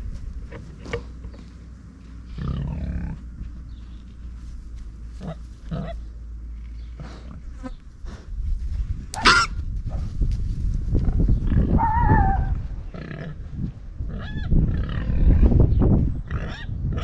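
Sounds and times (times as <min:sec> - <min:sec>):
pigs grunting: 0:02.2 - 0:03.2, 0:05.2 - 0:06.1, 0:06.9 - 0:07.6, 0:12.9 - 0:13.4, 0:14.1 - 0:15.6
pig squealing: 0:09.2 - 0:09.6.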